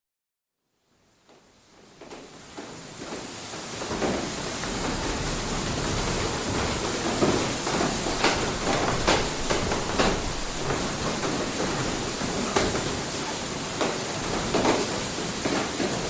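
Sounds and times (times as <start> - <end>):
falling water rushing: 3.5 - 16.0
sharp knocks from mill workings: 3.8 - 16.0.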